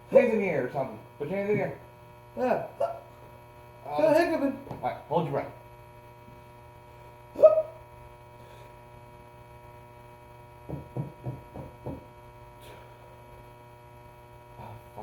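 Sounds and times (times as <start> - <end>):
electrical hum: 0.0 - 15.0
man hiccuping: 2.5 - 3.1, 7.4 - 7.8
short voiced sounds: 7.4 - 7.8.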